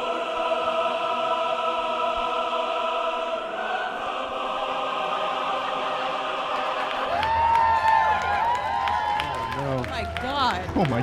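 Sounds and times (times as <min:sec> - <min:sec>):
choir singing sustained chords: 0:00.0 - 0:08.6.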